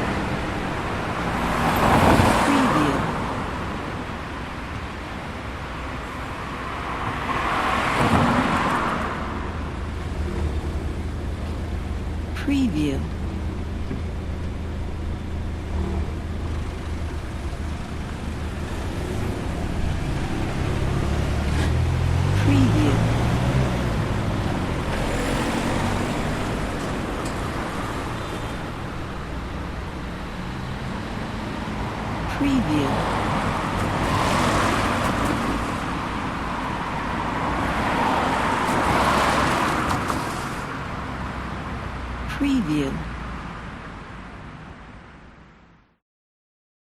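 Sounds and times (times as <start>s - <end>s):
passing cars rushing: 0.0s - 45.6s
low engine hum: 9.0s - 45.0s.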